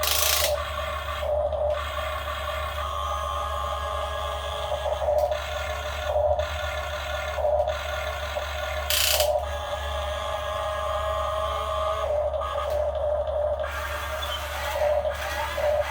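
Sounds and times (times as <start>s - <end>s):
hydraulic pump whining: 0.0s - 2.3s, 8.7s - 15.9s.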